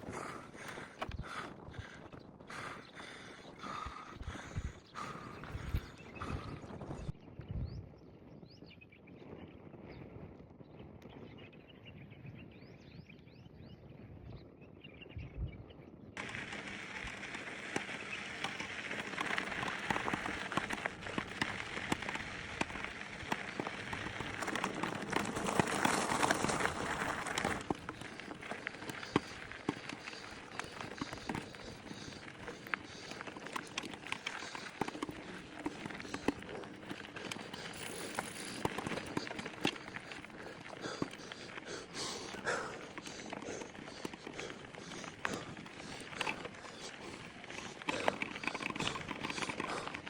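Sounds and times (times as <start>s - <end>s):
bike tyres rushing hiss: 16.2s - 33.7s
stones crunching and rattling: 16.2s - 50.0s.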